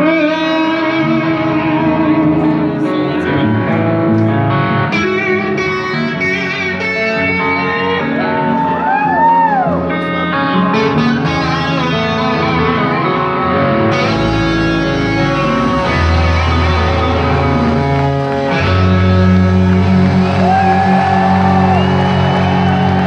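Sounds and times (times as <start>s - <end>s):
rock band playing: 0.0s - 23.0s.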